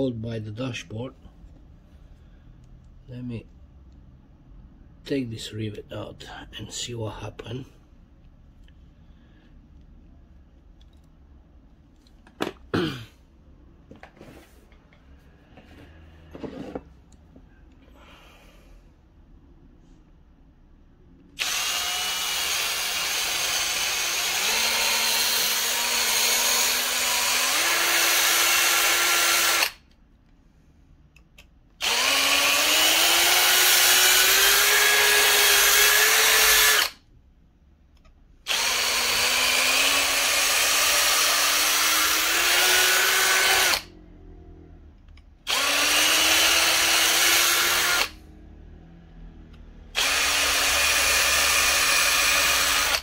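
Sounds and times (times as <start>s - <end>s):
small electric drill whining: 21.4s - 29.9s, 31.8s - 37.0s, 38.5s - 43.9s, 45.5s - 48.2s, 49.9s - 53.0s.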